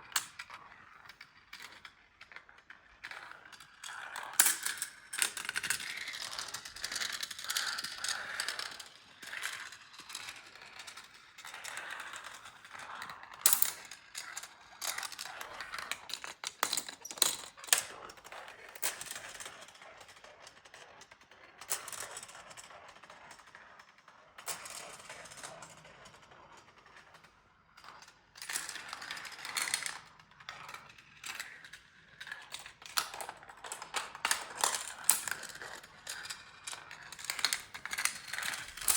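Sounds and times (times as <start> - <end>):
marbles rolling on plastic track: 0.1 - 38.9
marbles clicking and clacking: 4.2 - 18.2, 27.8 - 38.9.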